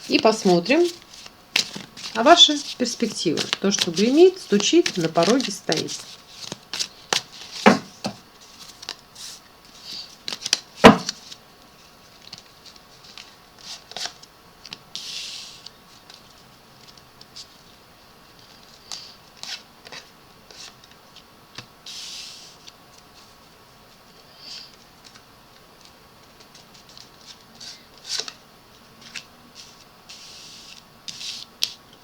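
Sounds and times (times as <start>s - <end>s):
cards sliding and rustling: 0.0s - 11.4s, 12.2s - 16.2s, 18.4s - 20.9s, 21.6s - 23.3s, 25.8s - 28.4s, 29.0s - 31.8s.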